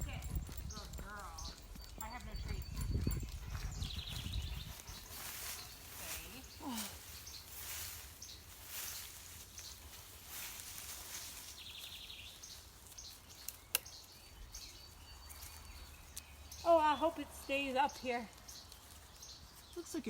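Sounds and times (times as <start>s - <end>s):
low wind rumble: 0.0s - 7.6s
soft rustling: 3.4s - 13.7s, 14.7s - 20.0s.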